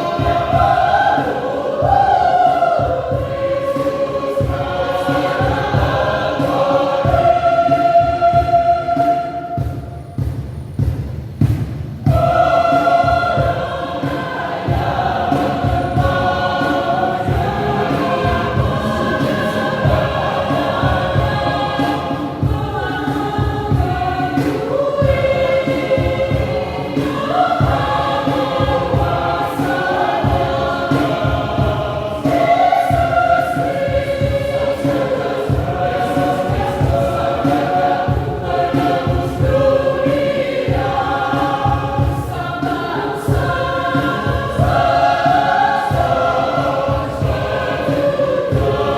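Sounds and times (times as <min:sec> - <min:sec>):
choir singing a hymn: 0:00.0 - 0:48.9
low accompaniment: 0:00.0 - 0:48.9.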